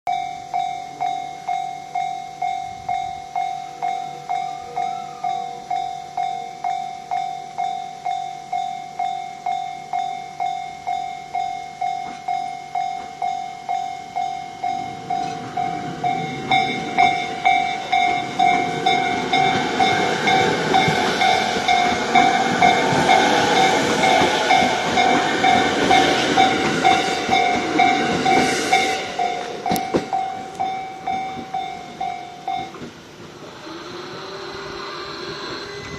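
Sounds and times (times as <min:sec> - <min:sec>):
level crossing warning bell ringing: 0:00.1 - 0:33.1
electric train passing: 0:00.1 - 0:35.9.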